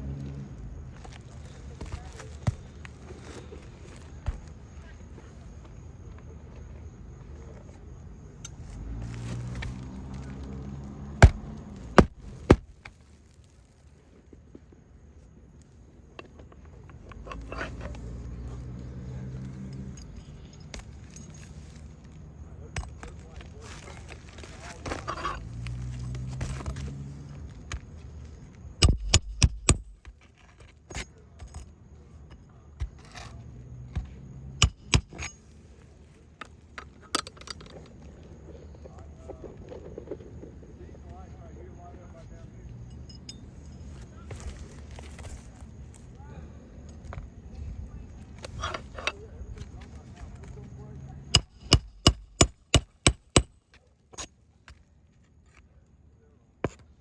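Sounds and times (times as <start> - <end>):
light scraping and clinking: 1.0 - 5.7, 16.1 - 40.9, 42.2 - 46.2, 46.8 - 55.6
hammer striking nails: 11.2 - 12.7, 28.8 - 30.1, 34.0 - 35.4, 51.3 - 53.6.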